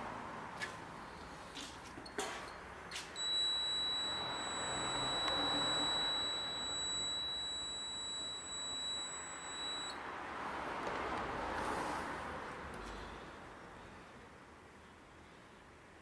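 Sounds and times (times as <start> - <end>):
high electronic beep: 3.2 - 10.0.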